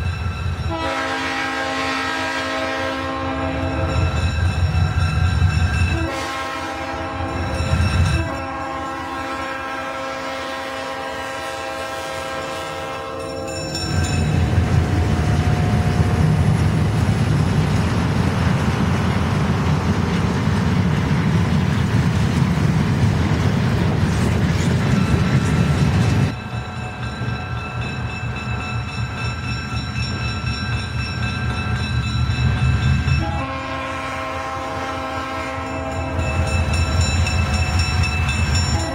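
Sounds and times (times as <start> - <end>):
train rumbling past: 0.0 - 38.9
steady horn-like tone: 0.7 - 3.9, 33.2 - 36.2
locomotive air horn blasts: 0.7 - 4.1, 5.8 - 13.5, 33.2 - 36.5.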